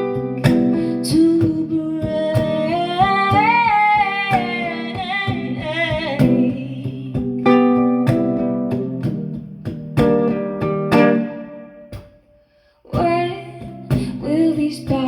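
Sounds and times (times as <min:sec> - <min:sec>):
strummed guitar: 0:00.0 - 0:15.0
woman singing with vibrato: 0:00.7 - 0:07.6, 0:12.9 - 0:15.0.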